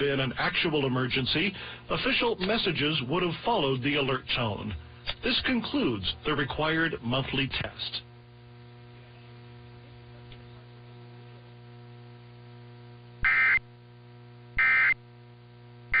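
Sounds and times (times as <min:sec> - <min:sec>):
shrill warbling data tones: 0:13.2 - 0:13.6, 0:14.6 - 0:15.0.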